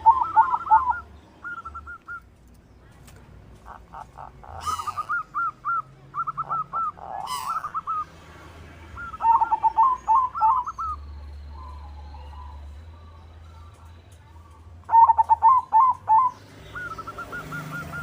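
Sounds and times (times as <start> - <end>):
doves cooing: 0.0 - 2.2, 3.6 - 8.1, 9.0 - 12.8, 14.9 - 18.0.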